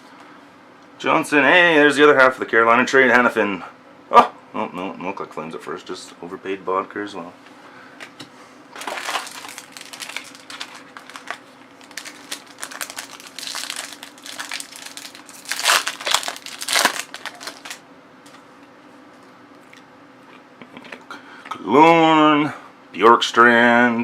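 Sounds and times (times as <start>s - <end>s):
plastic wrapper crinkling: 8.8s - 17.8s.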